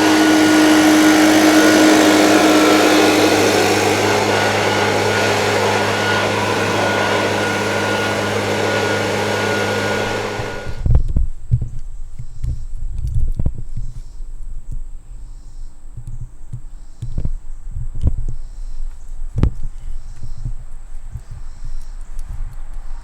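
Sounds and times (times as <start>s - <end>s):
leaf blower running: 0.0s - 10.8s.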